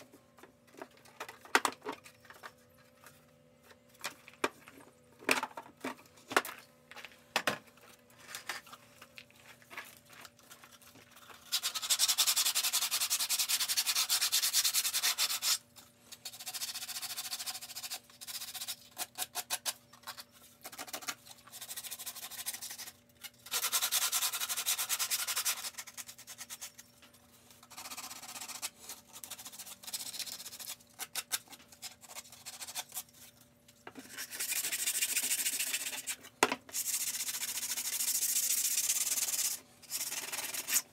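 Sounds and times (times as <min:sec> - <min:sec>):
sanding: 0:11.5 - 0:15.6, 0:23.5 - 0:26.7, 0:36.8 - 0:40.8.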